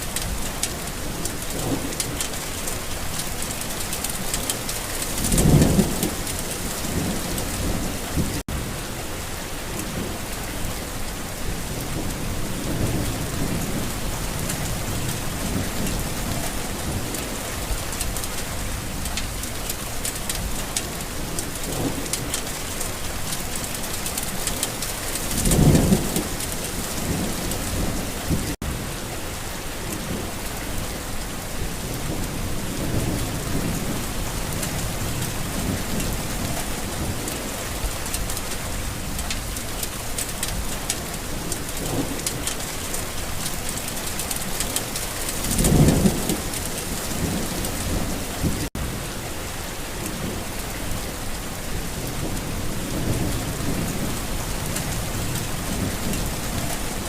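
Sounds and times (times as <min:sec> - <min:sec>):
steady rain falling: 0:00.0 - 0:57.0
thunder rumbling: 0:24.2 - 0:28.8, 0:44.3 - 0:49.0.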